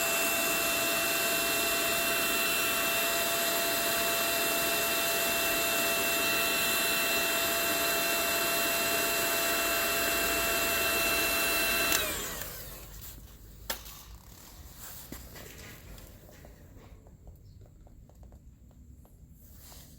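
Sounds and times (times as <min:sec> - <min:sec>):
electric motor whining: 0:00.0 - 0:13.0.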